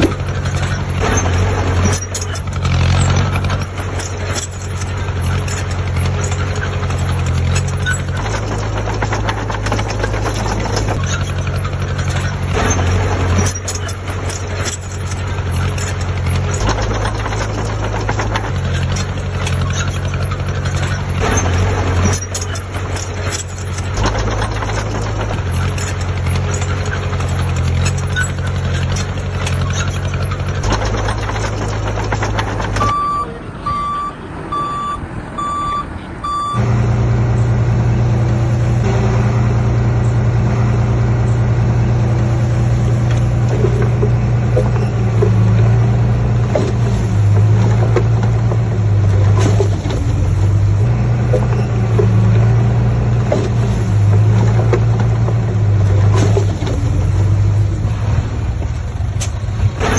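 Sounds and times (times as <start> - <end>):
heavy diesel engine running: 0.0 - 59.9
reversing alarm beeping: 32.8 - 43.4.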